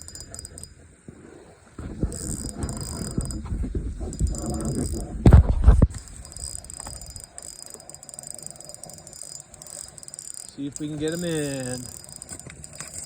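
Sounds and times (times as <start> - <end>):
fishing reel cranking and clicking: 0.0 - 0.7, 1.9 - 3.4, 4.0 - 5.1, 5.9 - 13.0.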